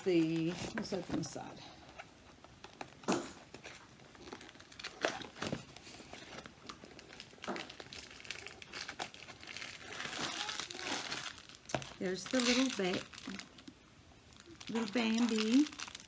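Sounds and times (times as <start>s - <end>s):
packaging crinkling and rustling: 0.0s - 16.0s.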